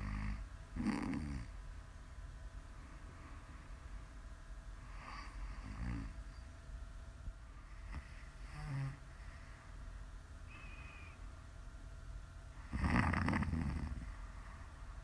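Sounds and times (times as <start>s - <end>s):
woman snoring: 0.0s - 1.5s, 7.9s - 9.0s, 12.6s - 14.1s.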